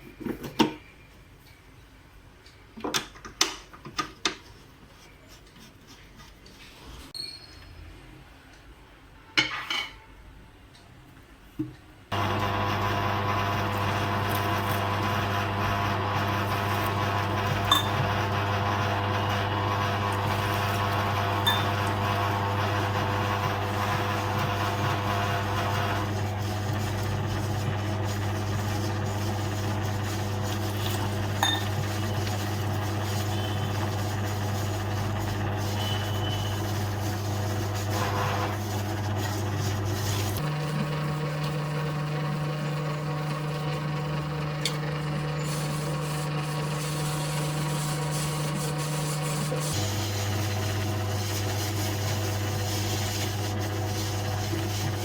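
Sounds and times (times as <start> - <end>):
electric motor humming: 12.1 - 55.0.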